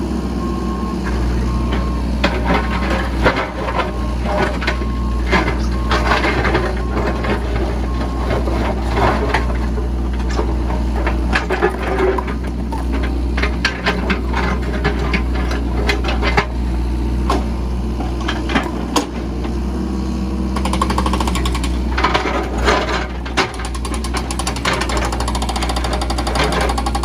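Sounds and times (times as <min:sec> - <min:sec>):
diesel engine droning: 0:00.0 - 0:20.6.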